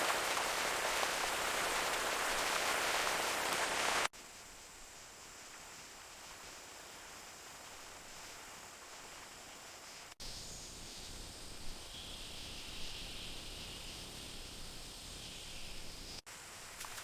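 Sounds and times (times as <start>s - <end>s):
background hiss: 0.0s - 17.0s
high insect drone: 4.2s - 17.0s.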